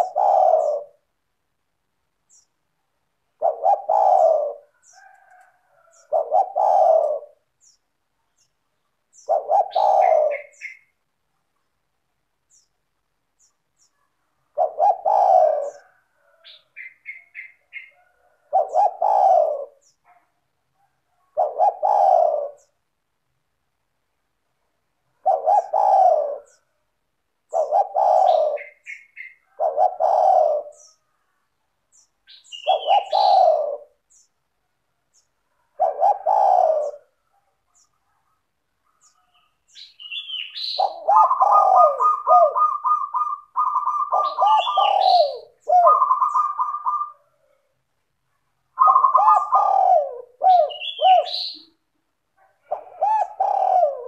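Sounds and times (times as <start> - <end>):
dove cooing: 0.0 - 1.2, 3.3 - 7.7, 9.1 - 11.0, 14.4 - 22.8, 25.0 - 26.8, 27.4 - 31.4, 32.3 - 34.2, 35.5 - 47.9, 48.6 - 54.0
small bird chirps and trills: 2.2 - 2.6, 3.7 - 11.8, 12.4 - 14.2, 15.1 - 20.2, 27.6 - 34.4, 36.8 - 47.8, 50.5 - 51.9.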